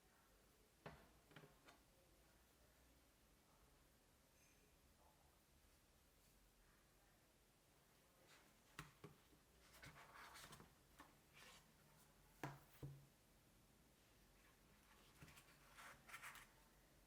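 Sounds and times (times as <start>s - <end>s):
rustling and rubbing: 9.6s - 12.8s, 14.4s - 16.6s.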